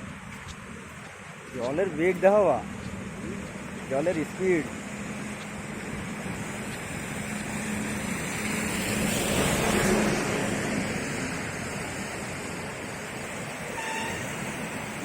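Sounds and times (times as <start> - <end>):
constant rushing noise: 0.0 - 15.0
steady engine hum: 0.0 - 15.0
vehicle passing: 2.5 - 12.2.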